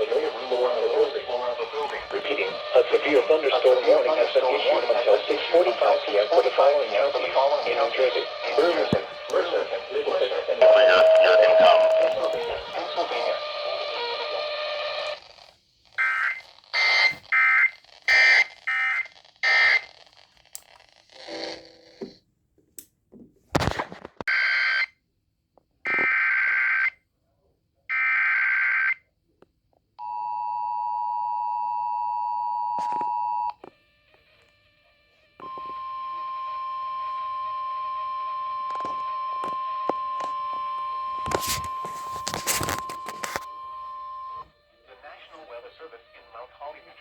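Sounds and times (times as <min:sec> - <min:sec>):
two-tone attention signal: 0:10.6 - 0:12.7.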